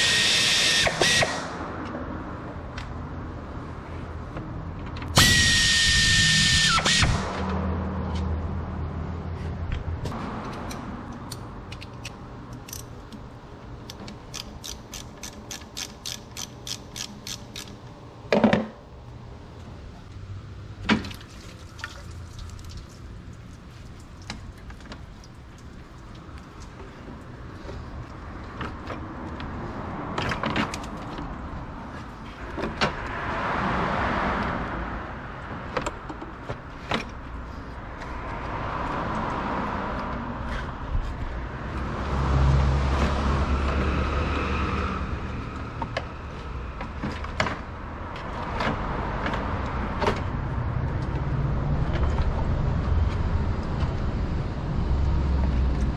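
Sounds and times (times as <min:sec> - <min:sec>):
vehicle passing by: 0:07.1 - 0:11.2, 0:27.8 - 0:35.7, 0:37.3 - 0:46.8, 0:47.8 - 0:55.9
ratchet wrench clicking: 0:10.6 - 0:12.9, 0:13.9 - 0:17.8.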